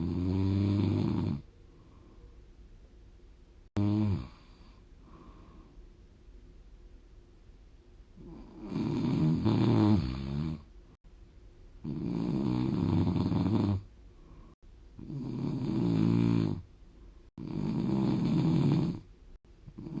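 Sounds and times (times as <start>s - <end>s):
person snoring: 0.0s - 1.5s, 3.8s - 5.6s, 8.2s - 10.6s, 11.8s - 13.8s, 15.0s - 16.6s, 17.4s - 19.0s, 19.8s - 20.0s.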